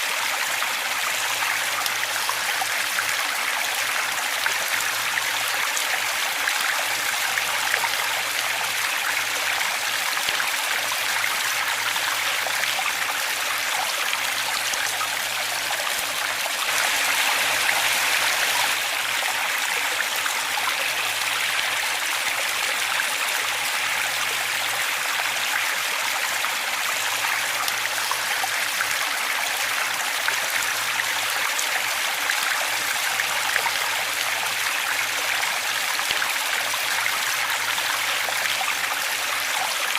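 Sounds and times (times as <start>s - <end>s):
waterfall rushing: 14.2s - 24.7s.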